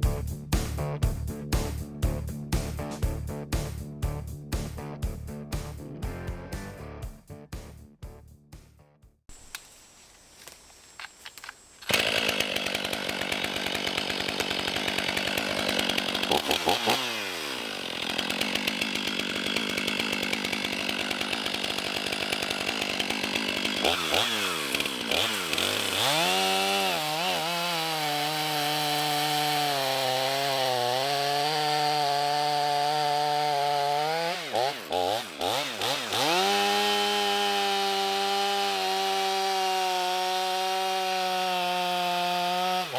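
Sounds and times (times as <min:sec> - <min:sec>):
chainsaw cutting into wood: 0:10.4 - 0:42.9.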